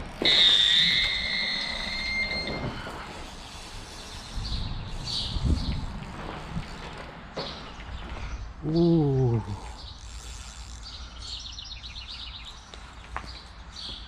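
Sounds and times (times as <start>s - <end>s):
birds chirping: 0.0s - 14.0s
bite alarm high tone: 0.2s - 3.0s.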